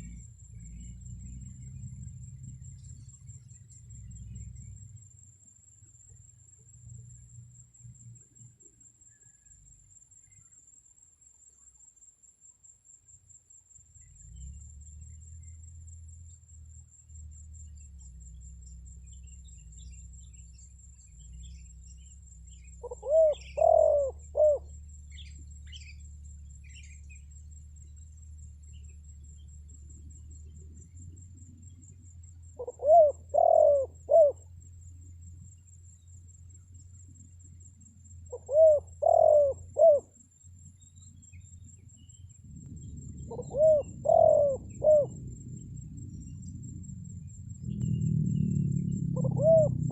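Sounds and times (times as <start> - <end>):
low steady hum: 0.0 - 10.5, 13.6 - 49.9
dove cooing: 22.6 - 25.3, 32.5 - 34.4, 38.3 - 40.1, 42.4 - 47.0, 48.9 - 49.9.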